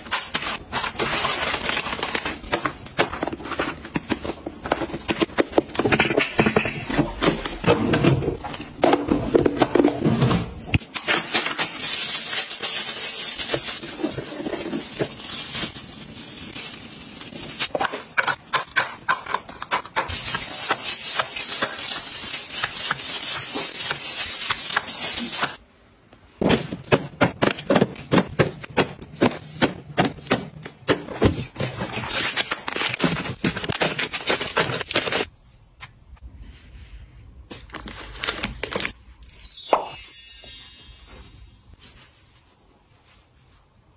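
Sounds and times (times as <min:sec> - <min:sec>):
plastic packaging crinkling: 0:00.0 - 0:05.9, 0:10.8 - 0:17.8.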